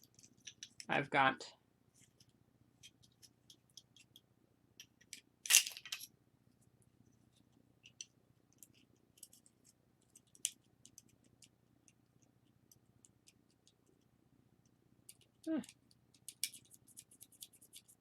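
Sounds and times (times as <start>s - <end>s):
small parts clicking and clattering: 0.0s - 0.9s, 2.2s - 6.1s, 7.8s - 14.0s, 15.0s - 18.0s
faint low hum: 0.0s - 18.0s.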